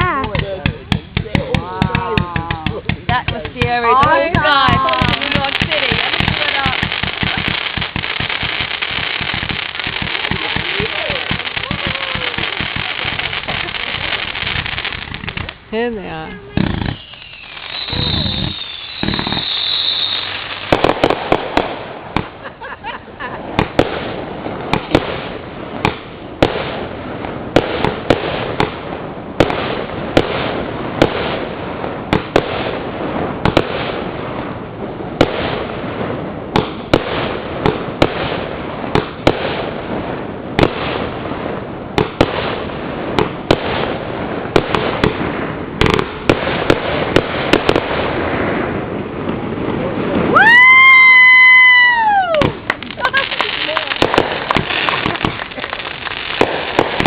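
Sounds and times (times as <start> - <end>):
firework hiss: 0.0 - 57.0
fireworks banging: 0.0 - 57.0.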